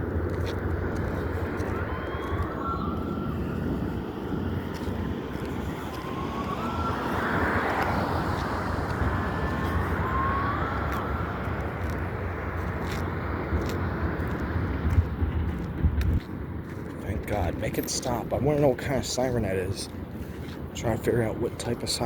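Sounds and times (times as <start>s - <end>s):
steady low rumble: 0.0s - 22.0s
faint wailing siren: 0.3s - 14.8s.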